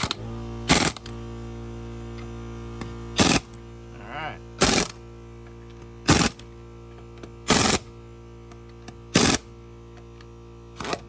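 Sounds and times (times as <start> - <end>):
impact gun bursts: 3.2 - 3.5, 4.6 - 5.0, 7.5 - 7.8.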